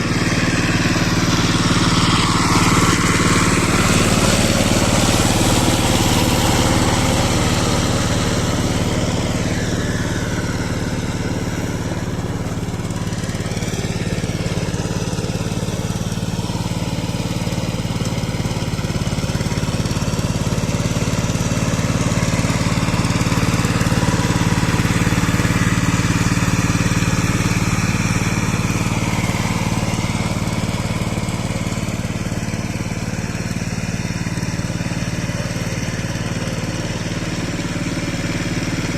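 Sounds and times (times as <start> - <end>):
tiller engine running: 0.0 - 38.9.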